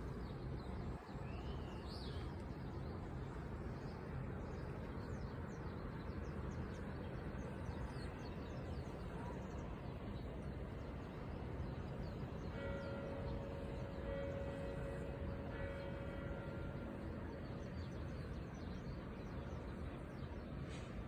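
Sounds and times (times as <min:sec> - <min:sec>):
church bell ringing: 0:12.4 - 0:18.3.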